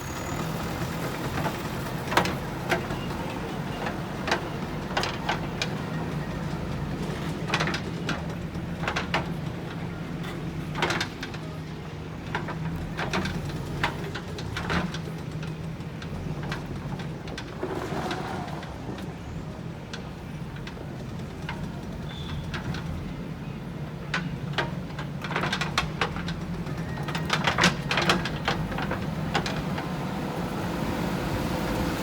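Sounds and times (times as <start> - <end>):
diesel engine running: 0.0 - 3.6.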